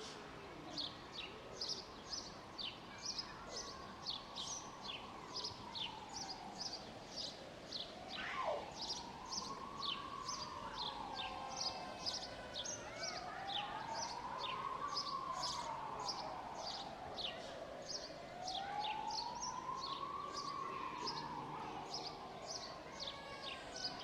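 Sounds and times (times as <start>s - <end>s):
small birds chirping: 0.7s - 24.0s
emergency siren wailing: 7.9s - 24.0s.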